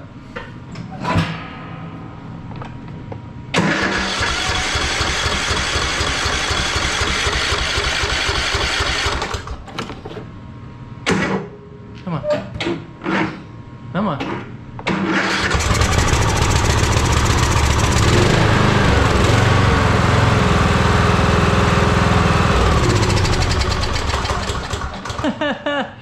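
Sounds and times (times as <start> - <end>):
engine cranking by starter: 3.6 - 9.7, 14.9 - 25.4.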